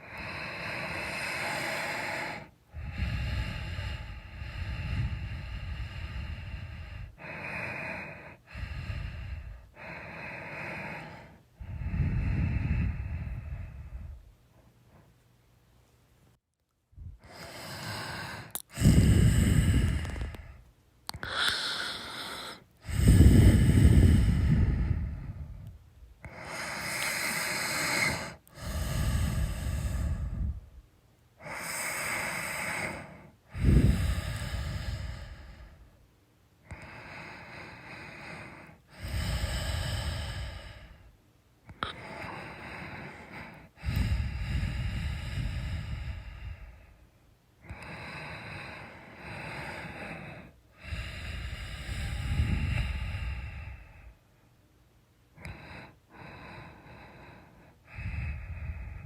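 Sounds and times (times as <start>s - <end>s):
person snoring: 0.0s - 14.2s, 17.2s - 30.6s, 31.4s - 35.8s, 36.7s - 41.1s, 47.7s - 54.0s.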